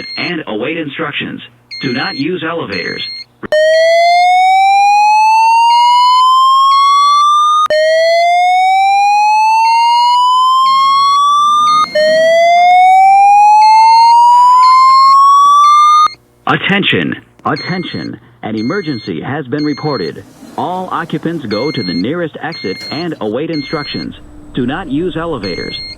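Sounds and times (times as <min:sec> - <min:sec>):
slow whoop evacuation tone: 0:07.8 - 0:16.1.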